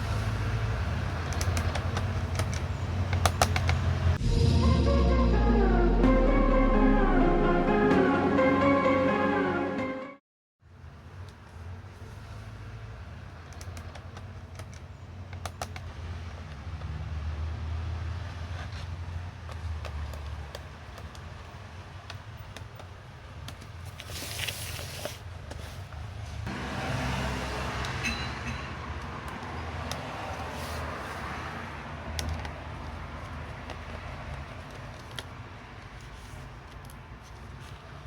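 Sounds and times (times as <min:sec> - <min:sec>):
small clicks and taps of tools: 0:01.2 - 0:03.8, 0:13.4 - 0:15.9.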